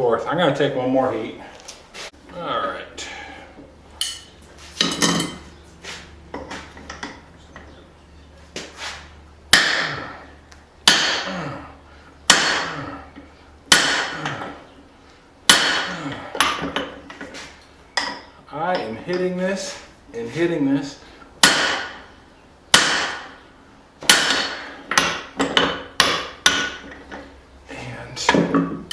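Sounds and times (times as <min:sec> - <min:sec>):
light metal clanks: 0:04.0 - 0:05.6, 0:06.3 - 0:07.8.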